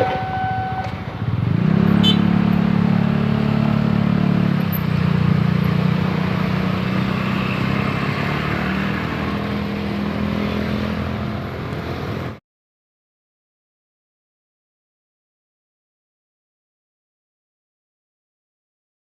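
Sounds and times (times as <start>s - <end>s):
vehicle engines running: 0.0s - 12.4s.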